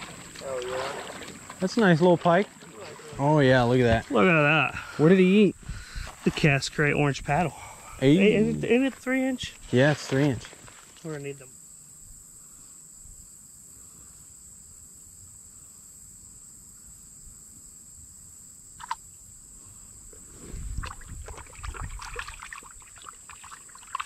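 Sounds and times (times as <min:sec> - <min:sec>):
water splashing in a creek: 0:00.0 - 0:05.1, 0:09.8 - 0:11.1, 0:20.2 - 0:24.0.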